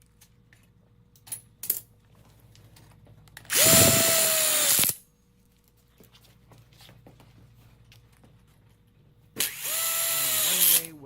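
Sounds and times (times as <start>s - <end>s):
cordless drill driving screw: 3.5s - 4.9s, 9.4s - 10.9s.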